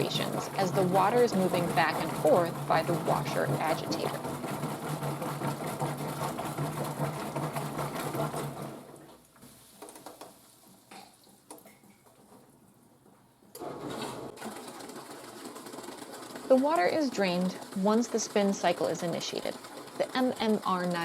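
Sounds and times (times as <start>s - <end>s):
water churning in tub: 0.0s - 9.2s, 13.6s - 21.0s
washing machine agitating: 0.0s - 21.0s.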